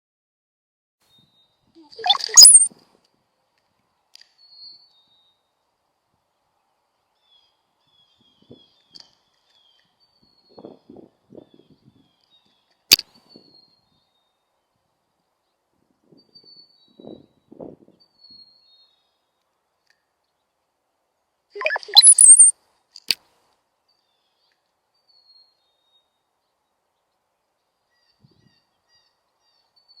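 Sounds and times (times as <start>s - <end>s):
faint high bird chirps: 1.1s - 2.7s, 4.3s - 5.4s, 16.2s - 19.3s, 21.6s - 22.5s, 27.8s - 30.0s
high falling chirps: 1.8s - 2.7s, 21.6s - 22.5s
sharp click: 2.0s - 2.7s, 12.9s - 13.1s, 21.6s - 23.3s.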